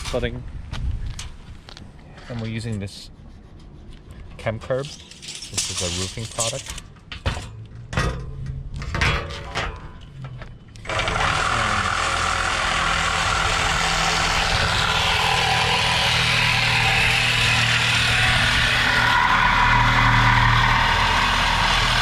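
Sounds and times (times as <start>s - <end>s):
loud engine-like running noise: 10.8s - 22.0s.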